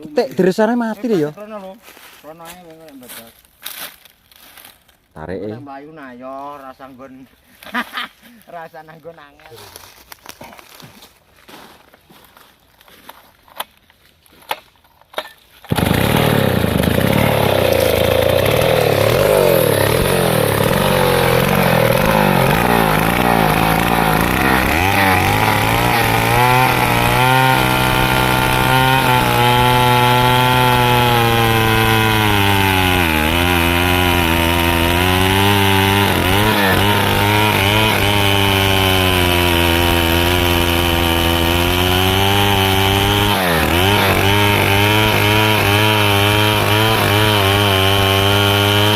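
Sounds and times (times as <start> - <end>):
chainsaw cutting wood: 14.4 - 48.9.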